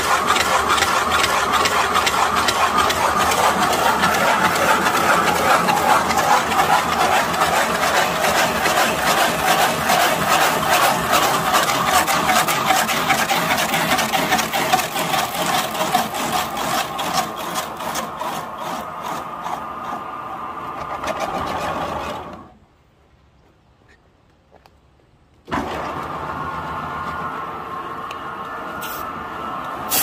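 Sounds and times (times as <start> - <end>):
cutting tool scraping wood: 0.0 - 20.0, 20.8 - 22.4
lathe motor hum: 0.0 - 22.5.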